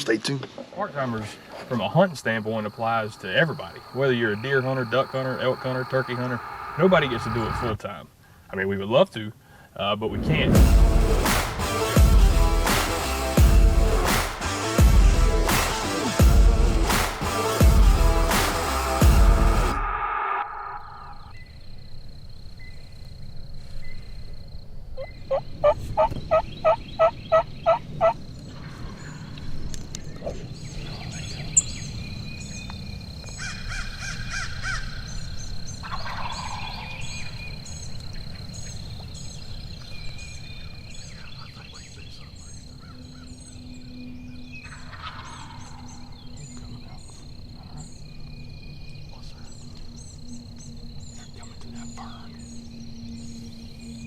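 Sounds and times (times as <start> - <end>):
songbirds chirping: 0.0 - 10.6, 20.8 - 54.0
turkey gobbling: 25.0 - 28.2, 35.8 - 37.0, 44.6 - 46.1
turkey yelping: 25.0 - 28.2, 35.8 - 37.0, 44.6 - 45.8.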